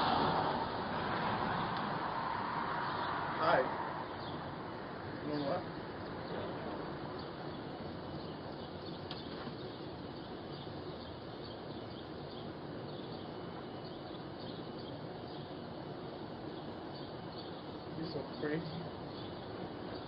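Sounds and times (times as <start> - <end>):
outdoor background hiss: 0.0 - 20.0
faint bird chirps: 5.2 - 20.0.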